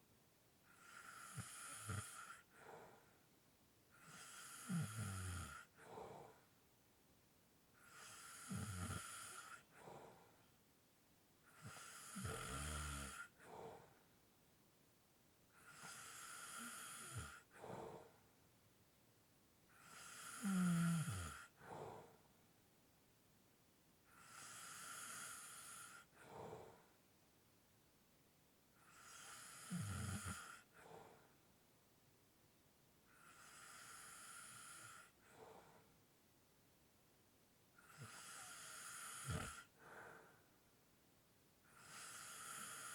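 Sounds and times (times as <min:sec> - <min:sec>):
person snoring and breathing: 0:04.1 - 0:06.4, 0:11.6 - 0:13.9, 0:19.8 - 0:22.1, 0:37.8 - 0:40.3
heavy breathing: 0:39.5 - 0:40.5.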